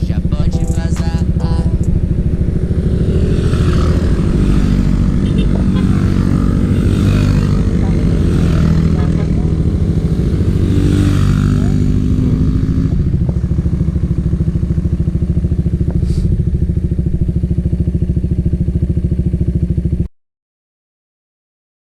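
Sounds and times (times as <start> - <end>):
motorcycle engine running: 0.0 - 20.1.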